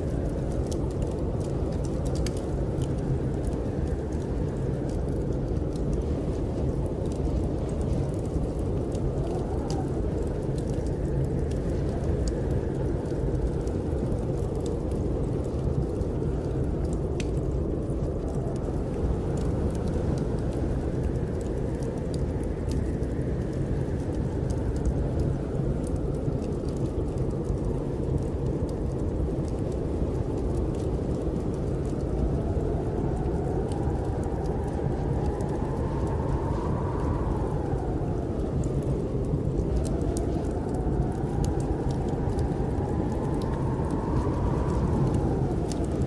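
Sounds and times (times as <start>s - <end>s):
snowstorm wind rumble: 0.0s - 46.0s
wood fire crackling: 0.0s - 46.0s.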